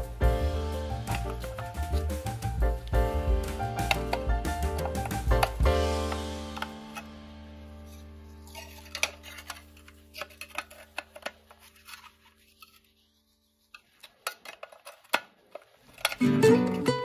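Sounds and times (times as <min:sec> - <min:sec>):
background music chord: 0:00.0 - 0:08.8.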